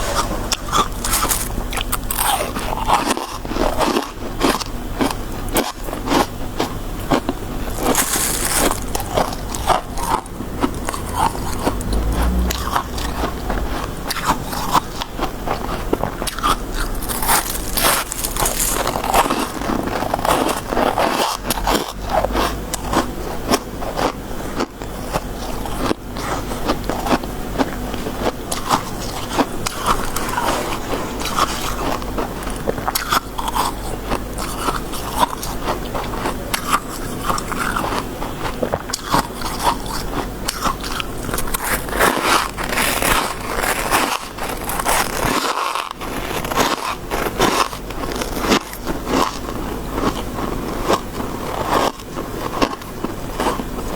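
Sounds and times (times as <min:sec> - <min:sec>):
ice being chewed: 0:00.0 - 0:53.9.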